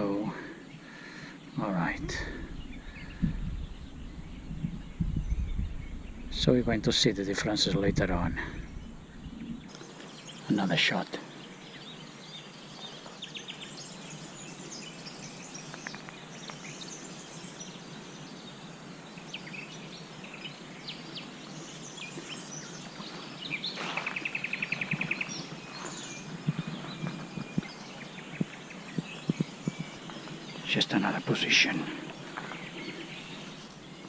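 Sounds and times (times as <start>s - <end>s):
songbirds chirping and singing: 0.0s - 34.0s
steady background hiss: 0.0s - 34.0s
low thumps: 2.0s - 9.7s.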